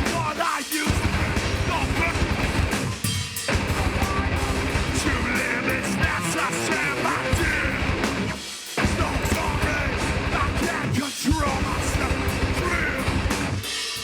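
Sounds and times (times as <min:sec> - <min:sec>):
loud hardcore band playing: 0:00.0 - 0:14.0
shouted vocals: 0:03.6 - 0:13.5.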